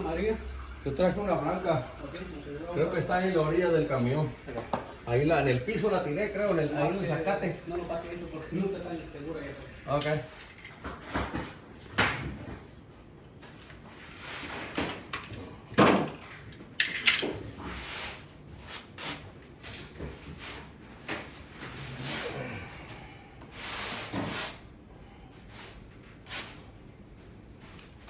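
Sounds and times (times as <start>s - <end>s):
parts being handled: 14.6s - 17.6s.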